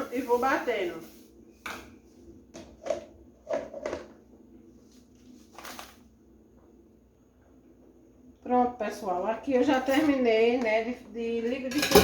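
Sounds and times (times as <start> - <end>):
kitchen scrapes and knocks: 11.7 - 12.0.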